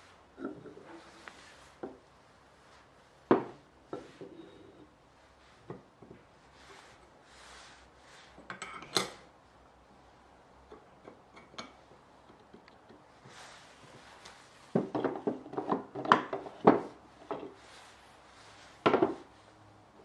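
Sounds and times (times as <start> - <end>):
soft rub on bench: 0.0 - 8.4, 13.2 - 14.8, 17.0 - 19.7.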